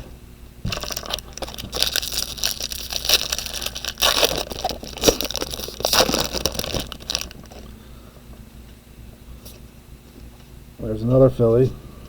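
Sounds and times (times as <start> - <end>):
wrapper tearing and crinkling: 0.7 - 7.7.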